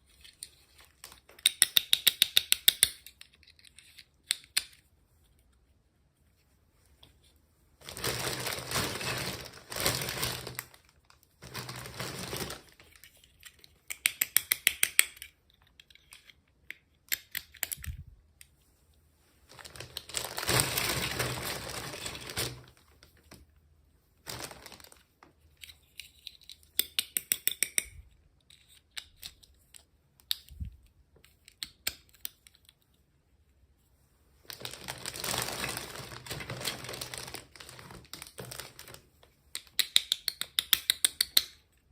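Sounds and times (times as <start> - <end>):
plastic packaging crinkling: 7.8 - 13.1, 19.5 - 23.3, 24.2 - 25.1, 34.5 - 39.1.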